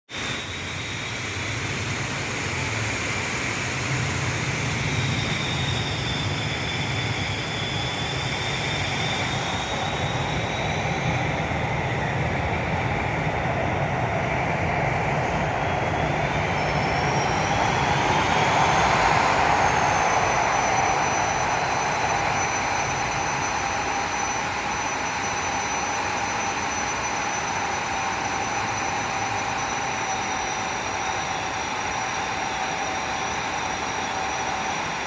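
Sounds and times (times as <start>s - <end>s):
thin whistling tones: 4.6s - 13.2s.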